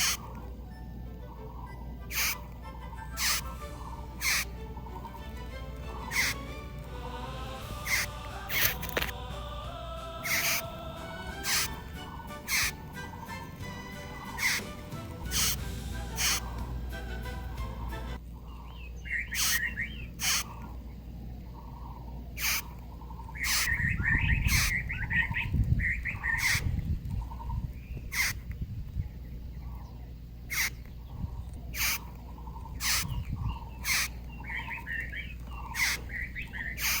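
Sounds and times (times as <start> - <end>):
beetle rasping squeaks: 0.0 - 0.5, 1.2 - 6.6, 7.8 - 9.1, 10.2 - 10.7, 11.3 - 16.7, 19.1 - 20.7, 22.4 - 28.6, 29.6 - 37.0
soft beetle chirps: 0.0 - 0.5, 1.3 - 5.2, 5.9 - 6.5, 7.8 - 9.1, 10.2 - 10.7, 11.4 - 13.4, 14.3 - 14.7, 15.3 - 15.6, 16.2 - 16.6, 19.2 - 20.7, 21.6 - 37.0.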